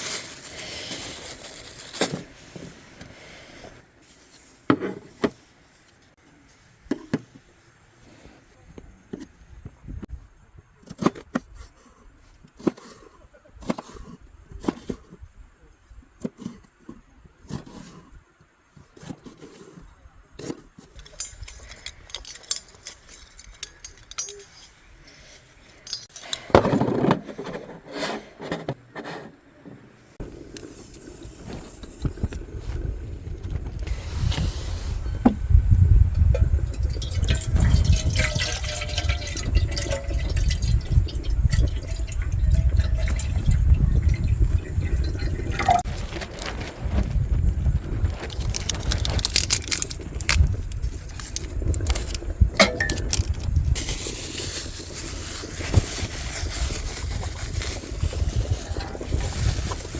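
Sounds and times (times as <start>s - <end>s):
pots and utensils knocking: 52.6s - 53.3s.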